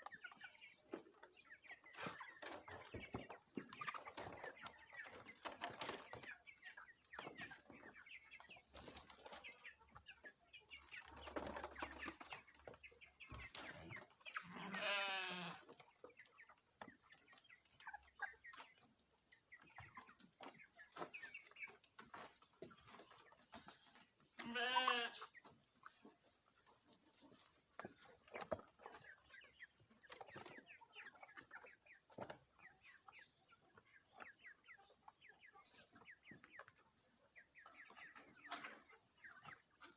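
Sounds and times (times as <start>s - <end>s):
chickens clucking: 0.0s - 39.9s
chicken drawn-out call: 13.4s - 15.7s, 24.4s - 25.6s.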